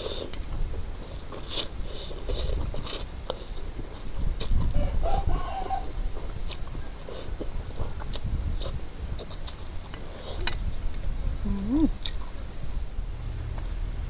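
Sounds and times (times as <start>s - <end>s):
chewing: 0.0s - 5.3s, 6.2s - 10.7s, 11.5s - 12.4s
chicken clucking: 4.8s - 5.9s.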